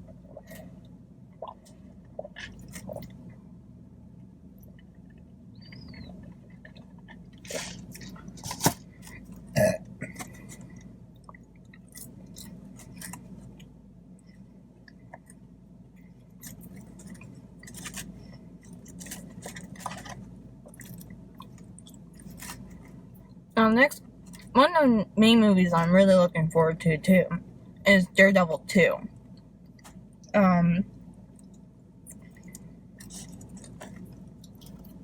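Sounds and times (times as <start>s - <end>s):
chewing and wet mouth noises: 0.0s - 3.4s, 4.6s - 24.5s, 30.9s - 35.0s
person burping: 9.6s - 10.2s.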